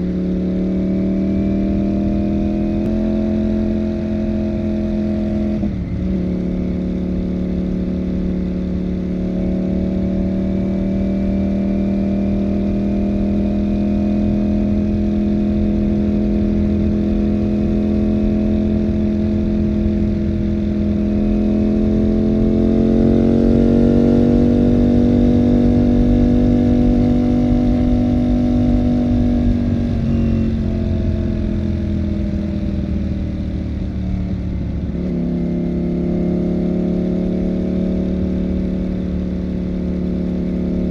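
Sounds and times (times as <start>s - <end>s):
motorcycle engine cruising: 0.0s - 40.9s.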